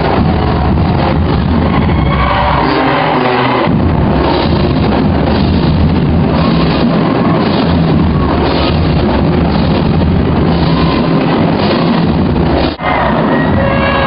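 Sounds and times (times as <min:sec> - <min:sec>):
marching drums beat: 0:00.0 - 0:02.3, 0:03.7 - 0:12.8
low brass tones: 0:12.8 - 0:14.0.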